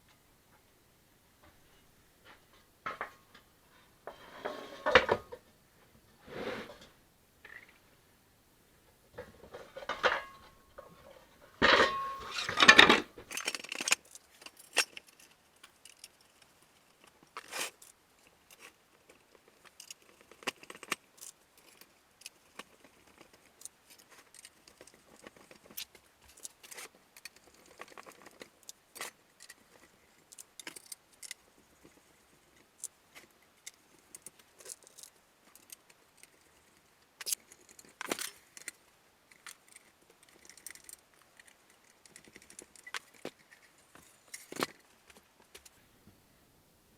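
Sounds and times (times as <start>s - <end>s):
parts clattering and scraping: 2.2s - 5.4s, 6.0s - 7.8s, 9.2s - 18.8s, 19.5s - 45.8s
small hard parts clicking: 11.6s - 45.8s.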